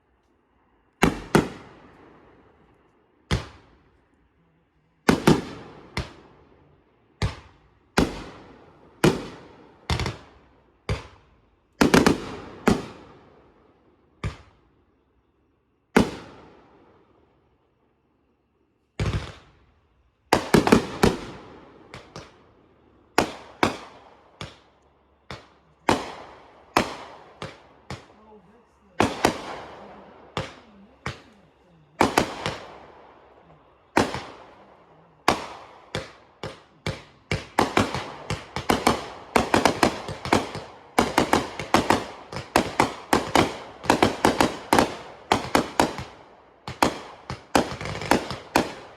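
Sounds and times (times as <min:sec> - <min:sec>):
fireworks bangs echoing: 0:01.0 - 0:02.4, 0:03.2 - 0:03.8, 0:05.0 - 0:06.4, 0:07.2 - 0:11.2, 0:11.8 - 0:13.3, 0:16.0 - 0:16.8, 0:19.0 - 0:19.6, 0:20.3 - 0:22.5, 0:23.1 - 0:28.2, 0:28.9 - 0:31.4, 0:32.0 - 0:48.9.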